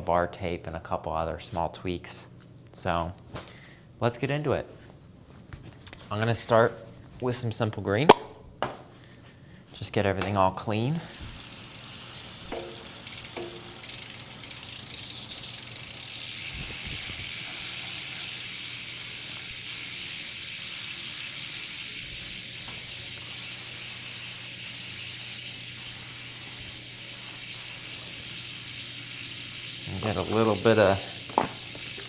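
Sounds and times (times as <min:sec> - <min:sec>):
liquid spray hissing: 0:10.9 - 0:32.0.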